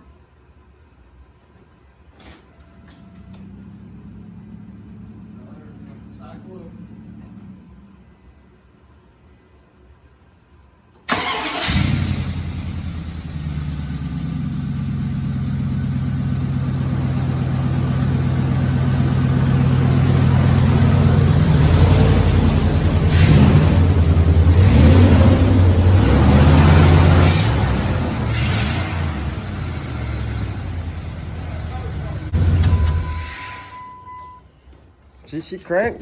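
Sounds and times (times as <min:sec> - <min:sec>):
pickup engine starting and running: 0:11.0 - 0:34.4.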